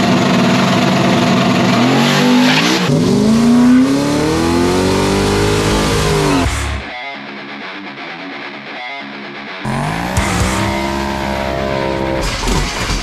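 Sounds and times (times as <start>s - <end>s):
drag car engines full throttle: 0.0s - 6.9s, 9.7s - 13.0s
rock guitar music: 0.0s - 13.0s.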